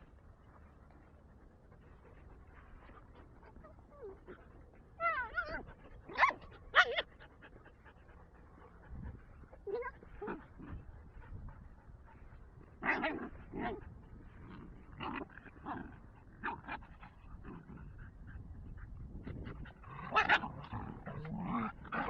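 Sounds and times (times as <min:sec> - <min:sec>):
dogs yelping in play: 0:02.9 - 0:08.2, 0:09.0 - 0:11.4, 0:12.7 - 0:14.0, 0:14.6 - 0:22.0.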